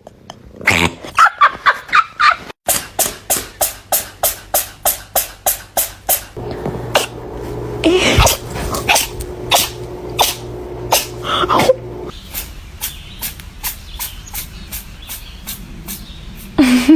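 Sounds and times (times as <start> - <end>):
cat sneezing: 7.9 - 11.8.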